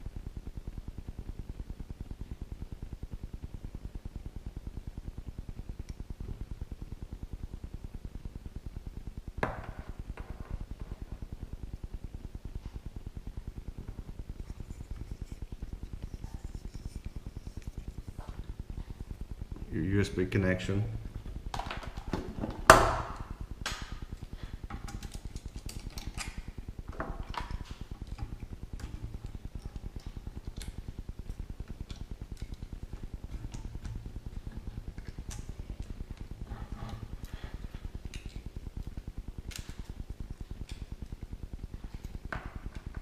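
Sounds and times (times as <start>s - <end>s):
steady low hum: 0.0s - 43.0s
small clicks and knocks: 21.5s - 41.2s.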